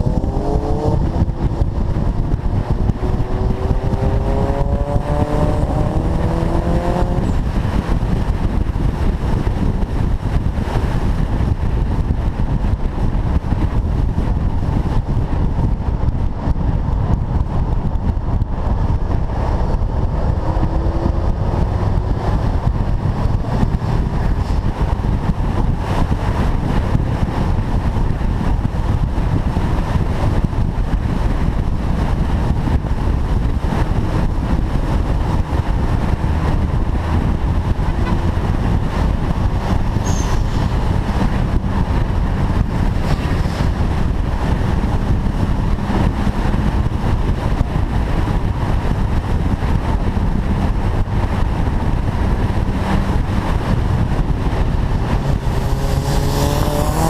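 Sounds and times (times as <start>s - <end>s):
rising engine tone: 0.0s - 7.4s, 19.0s - 24.1s, 54.8s - 57.0s
car engine and road rumble: 0.0s - 57.0s
wind noise: 0.0s - 57.0s.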